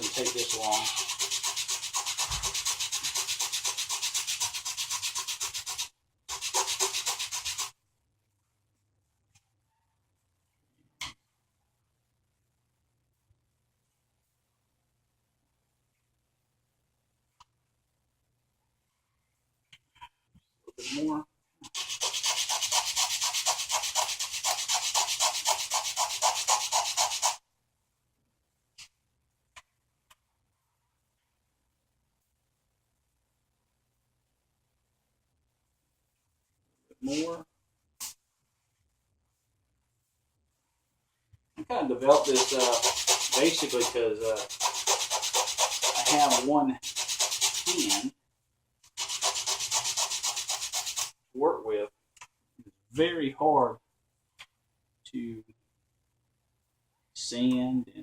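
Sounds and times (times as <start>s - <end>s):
sanding wood rasping strokes: 0.0s - 7.7s, 21.7s - 27.4s, 42.0s - 48.1s, 49.0s - 51.1s.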